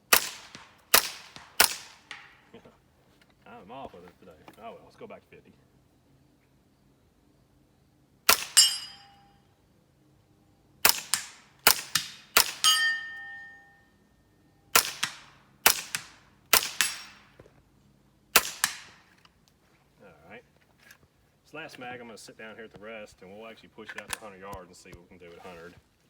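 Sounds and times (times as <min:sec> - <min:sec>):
suppressed rifle shots: 0:00.1 - 0:02.6, 0:08.3 - 0:09.2, 0:10.8 - 0:13.6, 0:14.7 - 0:17.5, 0:18.3 - 0:19.2
bullet striking steel target: 0:08.3 - 0:09.3, 0:10.8 - 0:13.8, 0:14.8 - 0:17.4.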